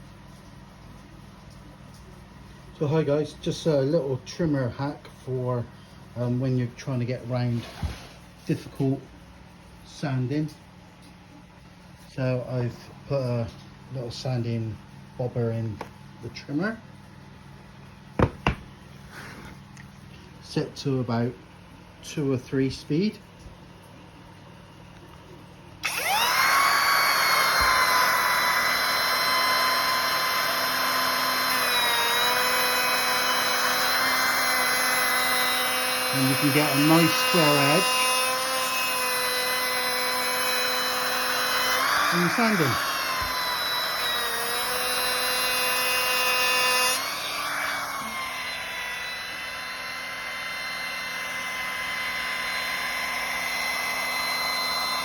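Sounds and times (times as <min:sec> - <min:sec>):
trim router whining: 0:18.2 - 0:19.5, 0:25.8 - 0:55.0.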